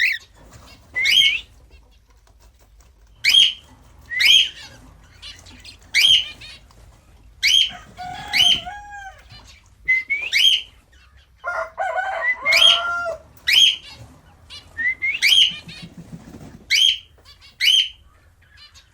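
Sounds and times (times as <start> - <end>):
cockatiel warbling: 0.0 - 0.3
cockatiel chirping: 0.0 - 1.5, 3.2 - 6.6.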